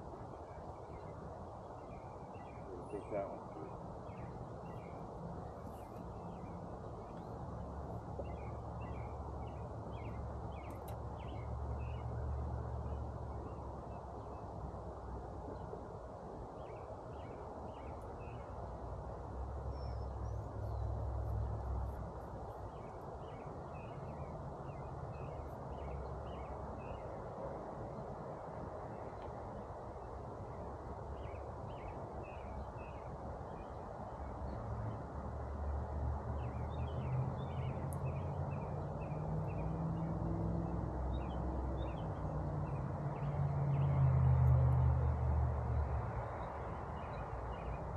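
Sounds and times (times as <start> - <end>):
steady outdoor hiss: 0.0 - 47.9
small birds chirping: 0.5 - 14.5, 19.5 - 27.2.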